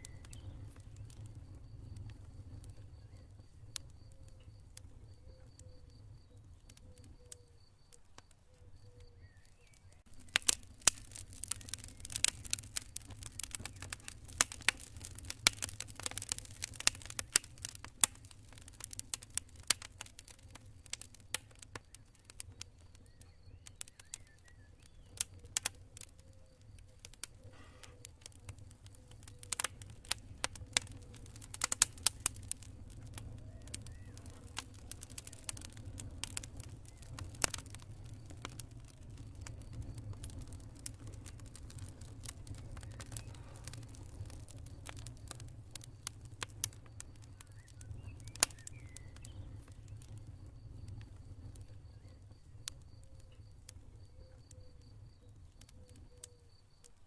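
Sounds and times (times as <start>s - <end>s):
crickets chirping: 0.0s - 11.8s, 35.5s - 57.0s
campfire crackling and popping: 0.0s - 57.0s.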